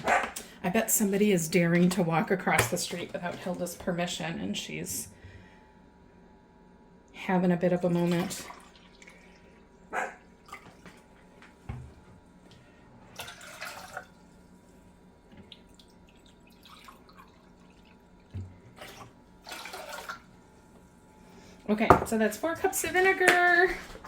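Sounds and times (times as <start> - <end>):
liquid pouring into cup: 8.1 - 9.8, 15.4 - 20.3
containers knocking on counter: 21.9 - 22.1.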